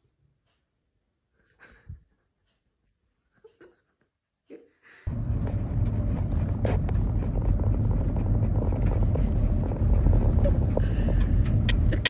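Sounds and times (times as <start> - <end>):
vehicle engine rumbling: 5.1 - 12.0.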